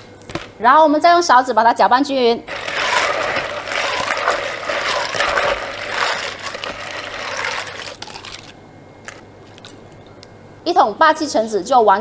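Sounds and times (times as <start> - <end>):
spoon stirring iced liquid: 2.5 - 10.2.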